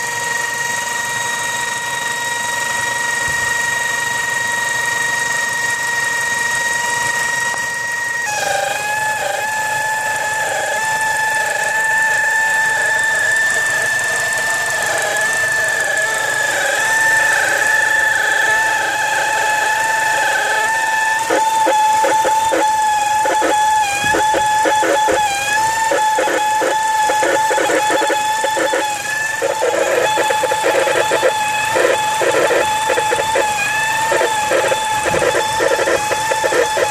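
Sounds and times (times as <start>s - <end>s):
car engine high-pitched whine: 0.0s - 36.9s
rapid ticking clatter: 10.3s - 36.9s.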